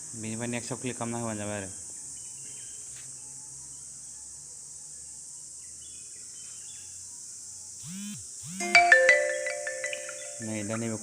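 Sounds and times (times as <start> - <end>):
high-pitched background noise: 3.2 - 11.0.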